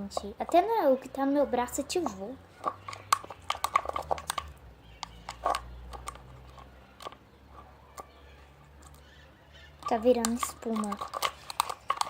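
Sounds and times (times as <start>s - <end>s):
slime squelching while stirred: 1.9s - 6.4s, 8.8s - 12.0s.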